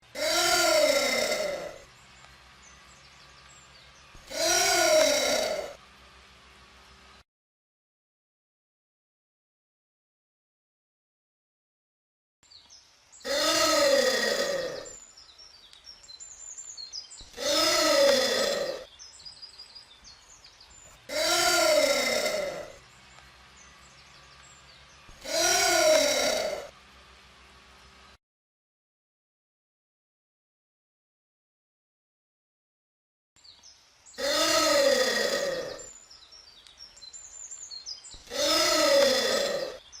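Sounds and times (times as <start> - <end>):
anteater harsh call: 0.0 - 1.9, 4.2 - 5.8, 13.2 - 15.0, 17.3 - 18.9, 21.0 - 22.8, 25.2 - 26.7, 34.2 - 35.9, 38.2 - 39.8
small birds chirping: 0.0 - 5.8, 12.5 - 27.6, 33.4 - 40.0.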